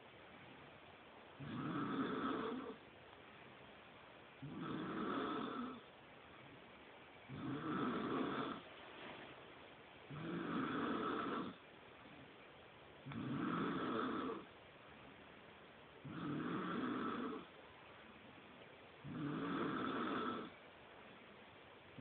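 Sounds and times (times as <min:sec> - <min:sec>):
person snoring loudly: 0:01.4 - 0:02.8, 0:04.4 - 0:05.8, 0:07.3 - 0:08.6, 0:10.1 - 0:11.6, 0:13.1 - 0:14.5, 0:16.0 - 0:17.5, 0:19.0 - 0:20.6
quiet breathing: 0:01.4 - 0:02.9, 0:04.4 - 0:06.0, 0:13.0 - 0:14.6, 0:16.0 - 0:17.9, 0:19.0 - 0:20.6.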